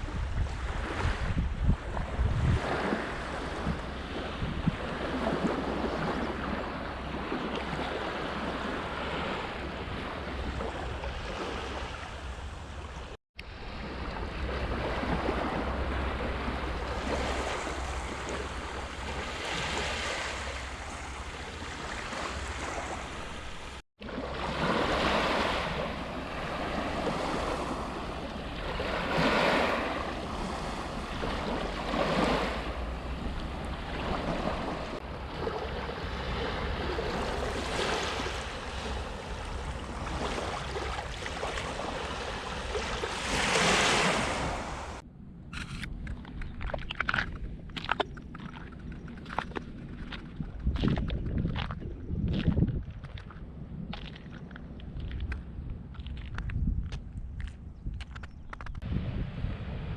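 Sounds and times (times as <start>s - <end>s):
wind rumbling on microphone: 0.0s - 59.9s
sea waves washing onto beach: 13.6s - 45.0s.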